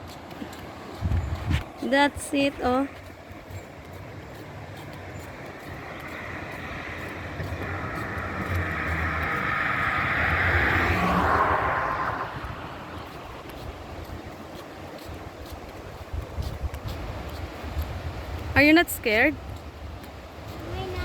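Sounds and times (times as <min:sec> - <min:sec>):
vehicle passing by: 0:02.6 - 0:14.7.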